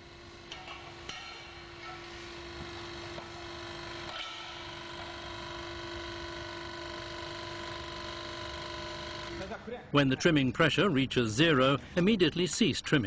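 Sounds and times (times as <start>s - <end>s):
hydraulic unit whining: 0.0s - 9.6s.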